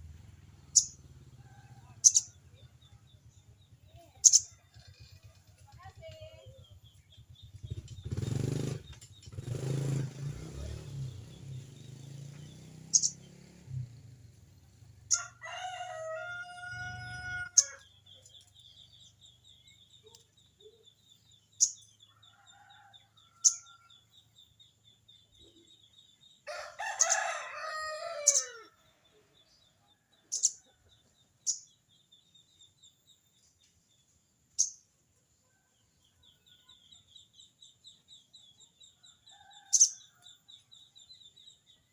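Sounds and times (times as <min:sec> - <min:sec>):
rooster crowing: 0:15.1 - 0:17.8, 0:22.1 - 0:24.0, 0:26.4 - 0:28.8.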